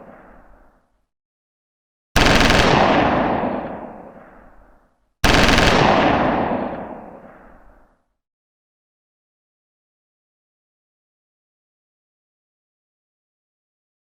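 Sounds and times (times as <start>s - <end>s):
machine-gun fire bursts: 2.2s - 7.9s.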